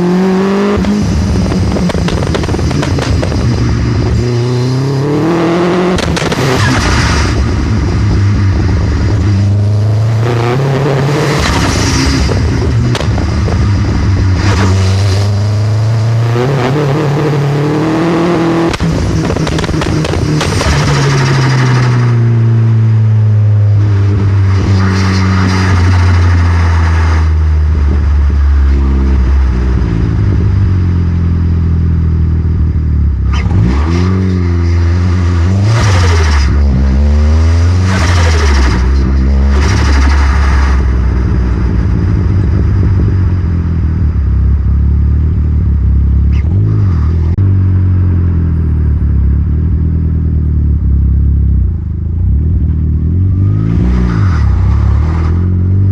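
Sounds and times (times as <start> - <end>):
car engine accelerating: 0.0 - 55.9.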